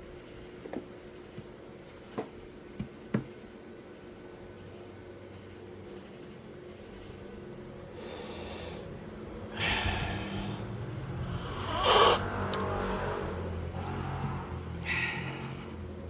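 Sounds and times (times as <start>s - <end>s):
low machine hum: 0.0s - 16.0s
steam wand hissing: 8.0s - 8.9s, 11.3s - 12.3s.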